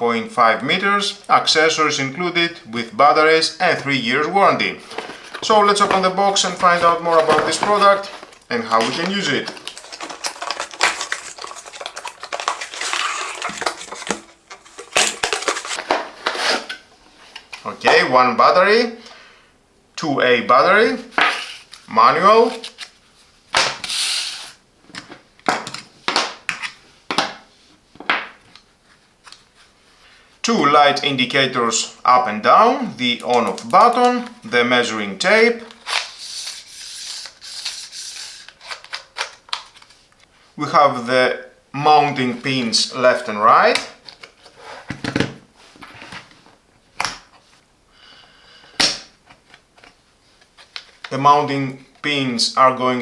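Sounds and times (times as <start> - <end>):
packaging rustling and scraping: 3.7 - 17.7, 21.1 - 26.8, 35.6 - 40.1, 43.1 - 46.6.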